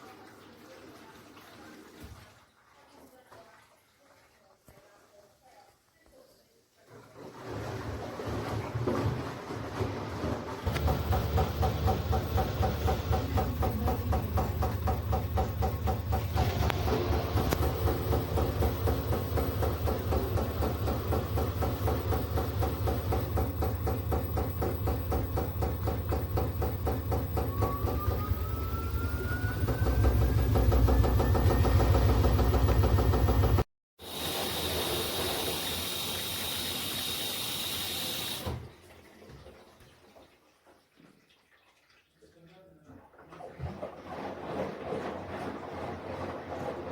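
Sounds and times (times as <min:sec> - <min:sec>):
washing machine churning: 0:07.2 - 0:39.1, 0:43.4 - 0:46.9
motor whine rising in pitch: 0:10.7 - 0:35.9.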